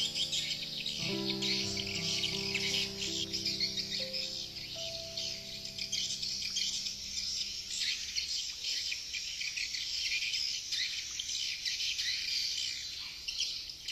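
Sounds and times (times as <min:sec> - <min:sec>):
birds twittering: 0:00.0 - 0:08.9.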